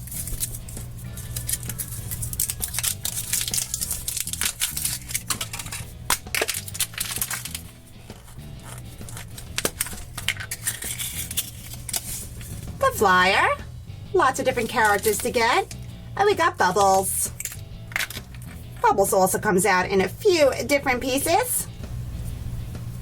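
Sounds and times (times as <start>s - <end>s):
foil wrapper crinkling: 0.0s - 12.8s, 14.6s - 15.9s
background music: 0.0s - 23.0s.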